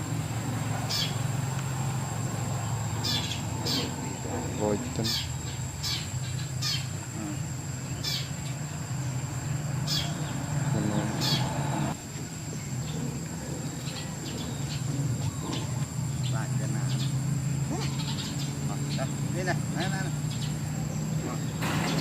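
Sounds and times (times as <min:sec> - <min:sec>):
steady low hum: 0:00.0 - 0:22.0
high animal chirps: 0:00.8 - 0:01.6, 0:02.2 - 0:11.9, 0:13.8 - 0:19.2.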